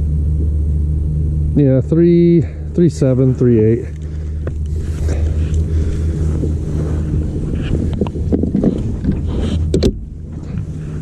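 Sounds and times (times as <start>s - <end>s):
boat motor humming: 0.0s - 11.0s
wind on microphone: 3.5s - 11.0s.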